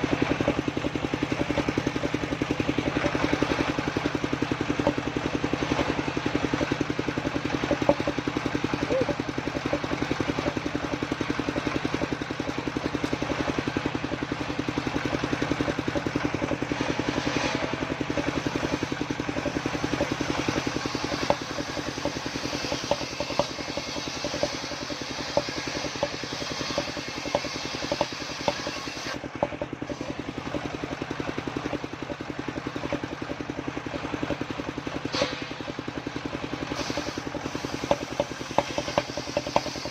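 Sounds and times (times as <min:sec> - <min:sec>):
circular saw engine running: 0:00.0 - 0:39.9
sharp knocks: 0:06.6 - 0:12.2, 0:17.2 - 0:29.7.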